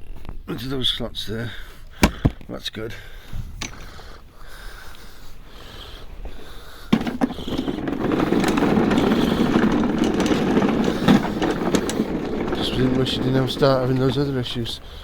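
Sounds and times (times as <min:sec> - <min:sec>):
lawnmower motor starting and running: 0:06.9 - 0:15.0.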